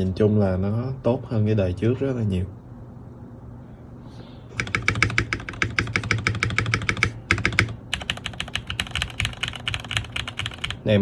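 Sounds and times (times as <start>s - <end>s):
fast typing on mechanical keyboard: 4.6s - 10.9s.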